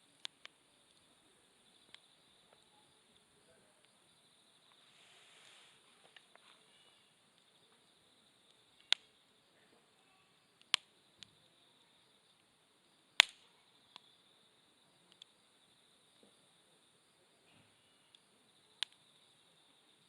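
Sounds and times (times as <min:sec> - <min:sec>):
campfire wood crackling and popping: 0:00.0 - 0:02.7, 0:05.5 - 0:09.4, 0:10.5 - 0:11.4, 0:12.3 - 0:14.1, 0:15.1 - 0:15.4, 0:18.1 - 0:19.3
insects chirring: 0:00.0 - 0:20.0.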